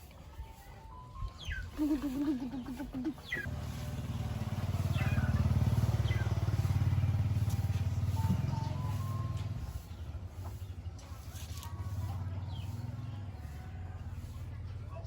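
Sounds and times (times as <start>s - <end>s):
birds chirping: 0.4s - 15.0s
vehicle engine passing by: 3.1s - 15.0s.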